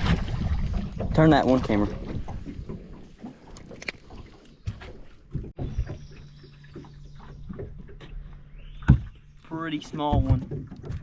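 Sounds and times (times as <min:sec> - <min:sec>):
knocks and clicks of fish handling: 0:06.7 - 0:09.3, 0:09.9 - 0:11.0.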